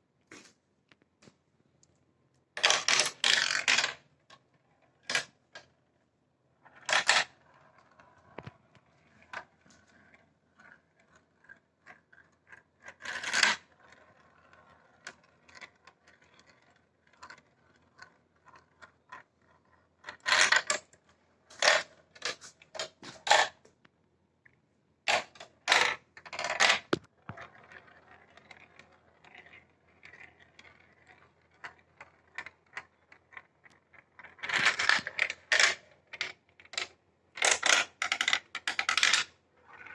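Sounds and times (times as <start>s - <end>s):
marbles clacking on track: 2.6s - 4.0s, 25.1s - 39.9s
marbles rolling on plastic track: 2.6s - 5.9s, 6.6s - 23.6s, 25.1s - 39.9s.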